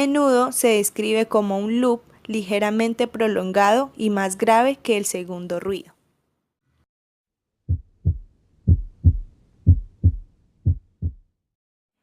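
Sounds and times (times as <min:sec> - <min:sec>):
heartbeat thumps: 0:07.7 - 0:11.3.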